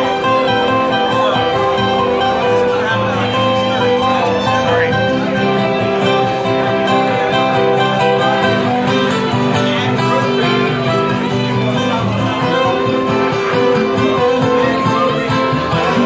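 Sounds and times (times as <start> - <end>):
live band playing instrumental: 0.0 - 16.0.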